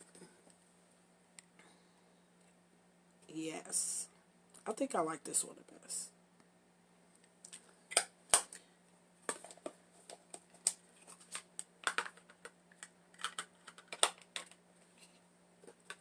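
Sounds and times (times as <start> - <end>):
faint low hum: 0.0 - 16.0
plastic items clicking on desk: 9.3 - 14.6.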